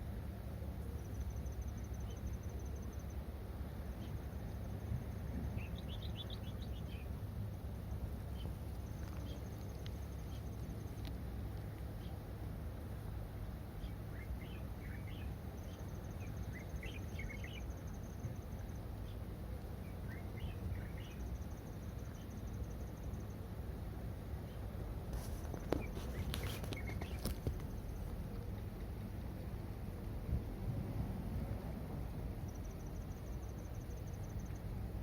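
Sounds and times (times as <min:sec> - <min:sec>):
low background rumble: 0:00.0 - 0:35.0
small birds chirping: 0:03.8 - 0:12.3, 0:13.7 - 0:23.3, 0:24.4 - 0:29.6.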